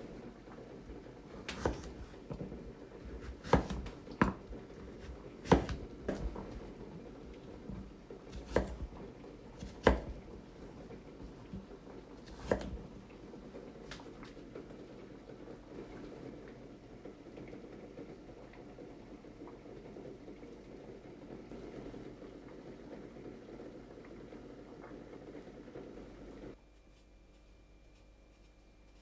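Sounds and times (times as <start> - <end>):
faint steady hum: 0.0 - 29.0.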